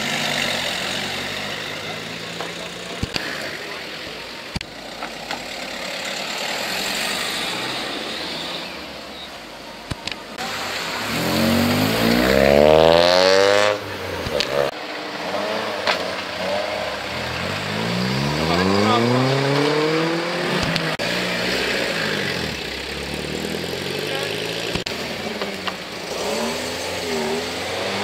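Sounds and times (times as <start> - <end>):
car revving up: 0.0 - 9.2, 10.0 - 28.0
other cars' engines: 0.0 - 28.0
car accelerating hard: 10.4 - 28.0.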